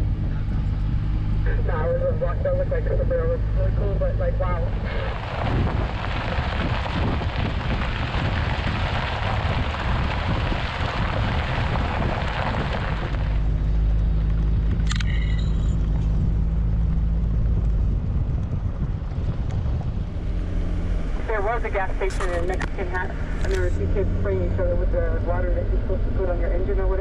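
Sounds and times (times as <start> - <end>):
low engine drone: 0.0 - 27.0
road and wind noise: 0.0 - 27.0
electronic beep: 14.9 - 15.8.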